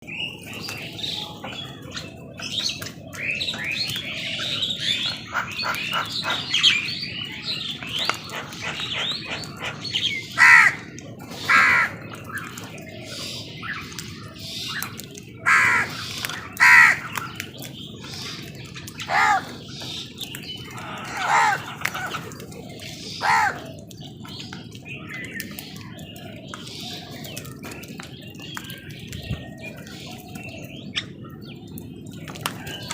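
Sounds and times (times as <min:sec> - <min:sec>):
small birds twittering: 0:00.0 - 0:32.9
crows cawing: 0:09.6 - 0:10.9, 0:11.5 - 0:12.0, 0:15.4 - 0:16.0, 0:16.6 - 0:17.1, 0:19.0 - 0:19.6, 0:20.7 - 0:22.4, 0:23.2 - 0:23.8.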